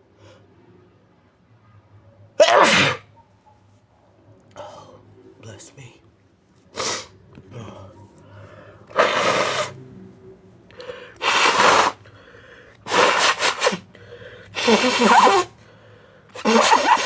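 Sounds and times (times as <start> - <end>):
person sneezing: 2.4 - 3.1, 6.8 - 7.8, 8.9 - 9.8, 11.2 - 12.1, 12.9 - 15.6, 16.3 - 17.0.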